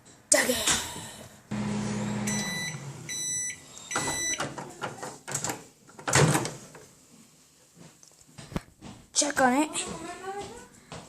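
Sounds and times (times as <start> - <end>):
microwave oven humming: 1.5 - 4.4
microwave beeps: 1.6 - 4.5.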